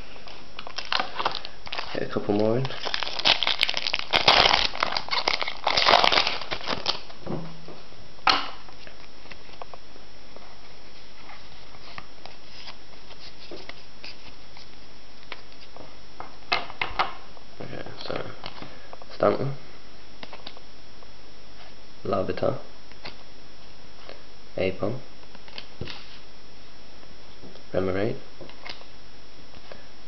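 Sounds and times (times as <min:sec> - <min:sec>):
foil wrapper crinkling: 0:00.3 - 0:07.2.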